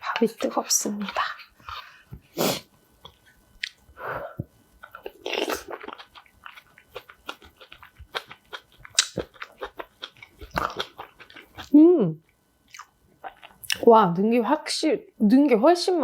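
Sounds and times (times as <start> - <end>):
person chewing food: 0.1 - 11.8, 12.7 - 13.8.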